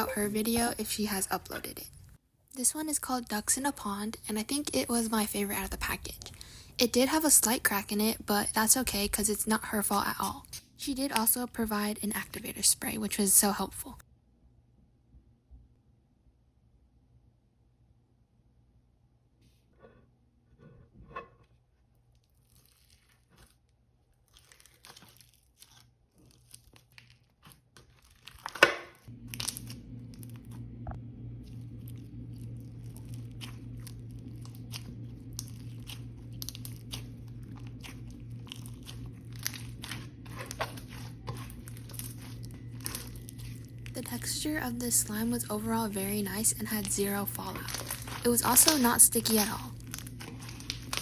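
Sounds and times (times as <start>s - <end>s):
slime squelch: 22.0s - 51.0s
slime squishing with sticky clicks: 24.3s - 44.2s, 46.6s - 51.0s
steady low hum: 29.0s - 51.0s.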